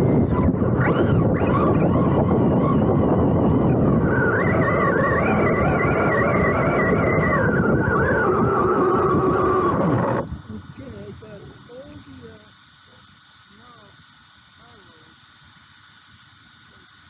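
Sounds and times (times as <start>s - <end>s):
rc truck motor whining: 0.0s - 10.3s
wind and tyre noise: 0.0s - 11.7s.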